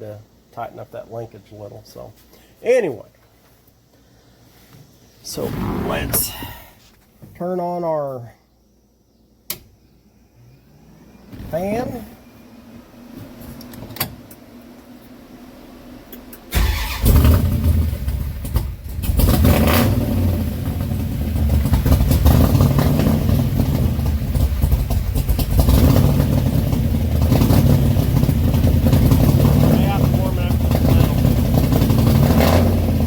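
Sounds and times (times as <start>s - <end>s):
car engine starting and running: 16.3s - 33.0s.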